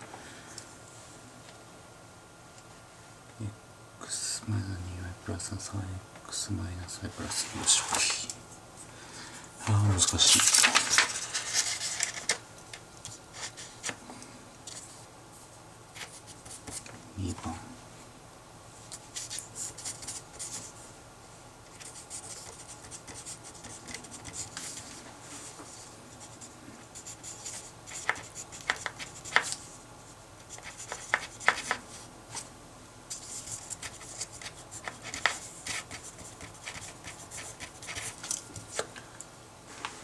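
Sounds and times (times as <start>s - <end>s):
pen scratching on paper: 21.7s - 24.8s, 27.0s - 29.5s, 30.5s - 31.8s, 33.1s - 38.2s.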